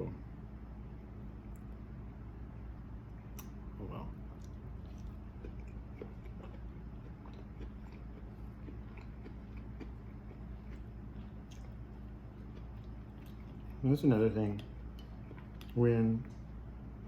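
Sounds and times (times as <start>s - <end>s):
steady low hum: 0.0s - 17.0s
person chewing food: 3.2s - 15.8s.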